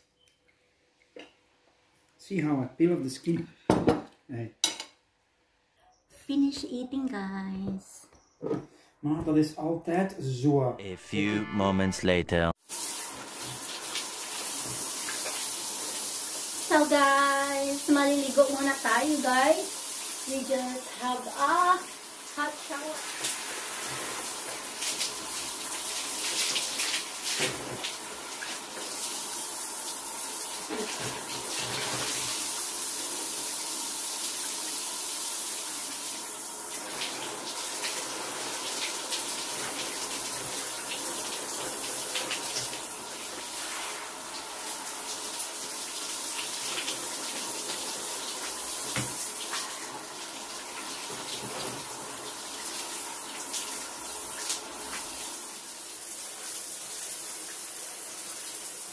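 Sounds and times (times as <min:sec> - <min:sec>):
shower water running: 0:12.7 - 0:58.9.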